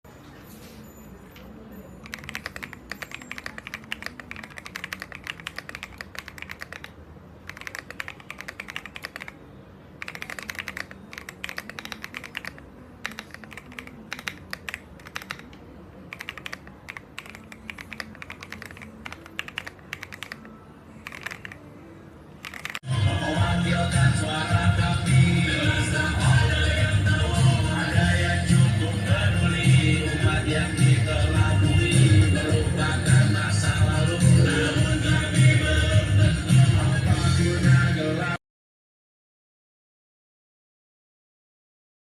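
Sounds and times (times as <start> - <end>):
typing on mechanical keyboard: 2.0 - 9.4, 10.0 - 21.7, 22.4 - 22.9.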